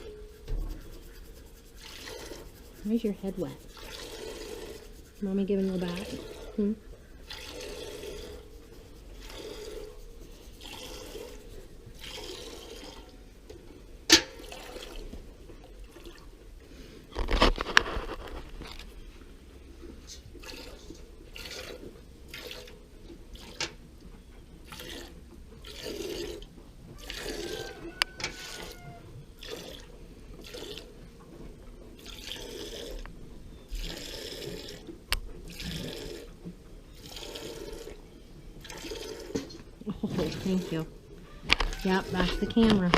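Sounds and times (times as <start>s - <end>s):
milk squirting into a pail: 0.4s - 5.2s, 7.2s - 10.0s, 24.7s - 28.8s.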